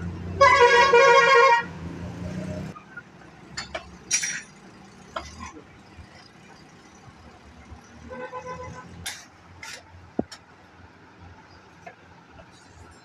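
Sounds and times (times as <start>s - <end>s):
vehicle horn: 0.4s - 1.8s, 8.1s - 9.0s.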